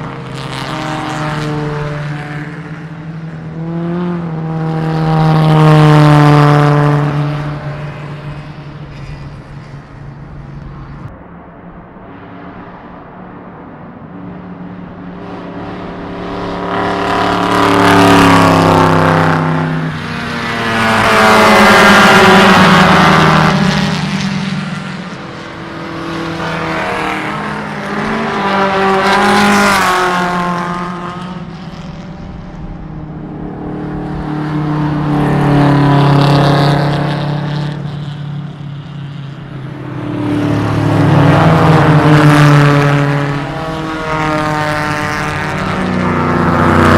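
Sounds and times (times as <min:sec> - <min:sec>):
race cars passing at speed: 0:00.0 - 0:46.9.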